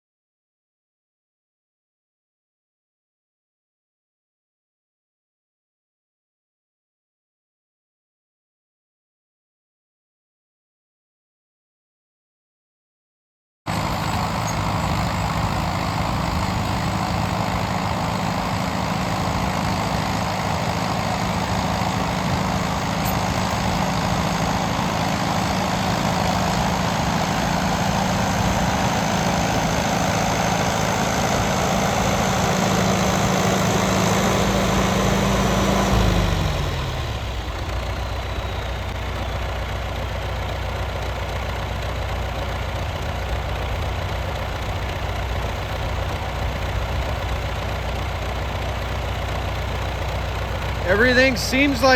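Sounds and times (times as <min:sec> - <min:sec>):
bulldozer diesel engine running: 0:13.7 - 0:51.9.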